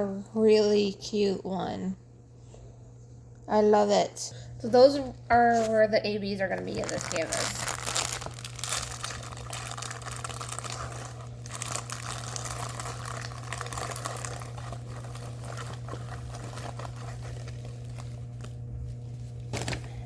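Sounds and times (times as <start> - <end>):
low electrical hum: 0.0 - 20.0
plastic packaging crinkling: 5.5 - 20.0.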